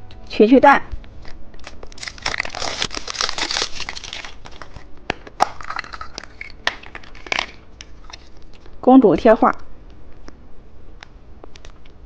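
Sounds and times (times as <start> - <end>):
plastic packaging crinkling: 1.2 - 8.8.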